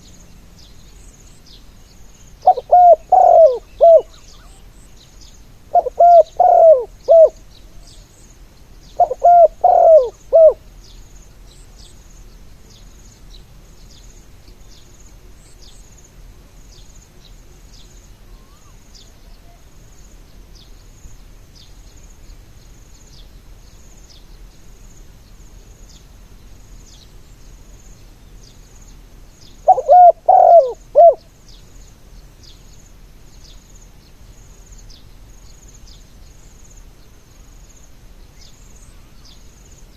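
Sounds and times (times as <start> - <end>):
faint insect chirping: 0.0 - 39.9
dove cooing: 2.4 - 4.7, 5.7 - 7.4, 9.0 - 10.7, 29.6 - 31.3.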